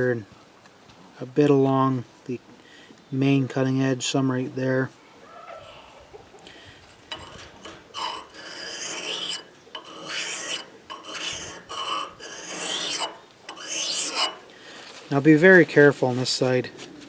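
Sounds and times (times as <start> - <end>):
blade rasping on sharpening stone: 7.1 - 14.5.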